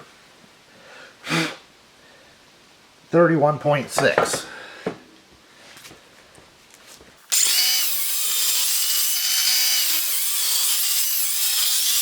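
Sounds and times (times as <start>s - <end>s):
miter saw motor whine: 7.3s - 10.8s
saw blade rasping through wood: 7.3s - 12.0s.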